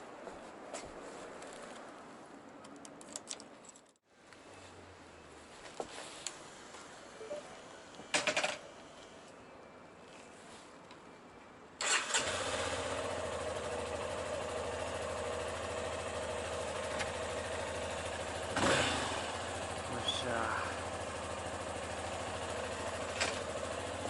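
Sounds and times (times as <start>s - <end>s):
motorcycle engine starting and idling: 11.8s - 24.0s.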